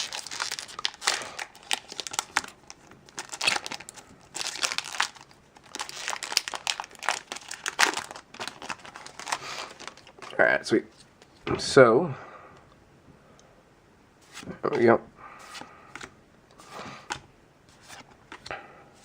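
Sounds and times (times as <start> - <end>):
foil wrapper crinkling: 0.0 - 10.4.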